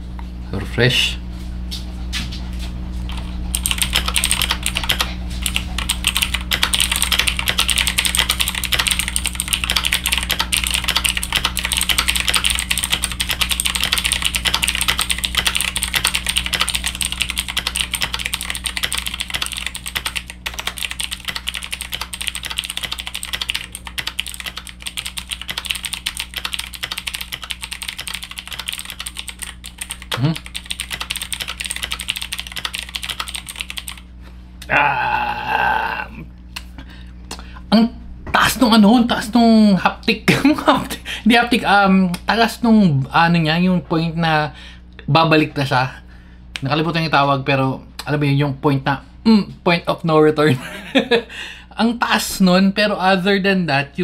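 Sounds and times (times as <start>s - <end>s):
low electrical hum: 0.0s - 54.0s
mechanical keyboard typing: 3.1s - 34.0s.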